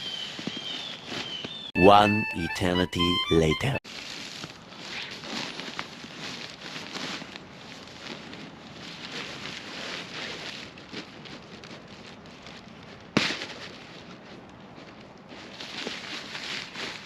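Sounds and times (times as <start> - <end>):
wood fire crackling: 10.6 - 16.3.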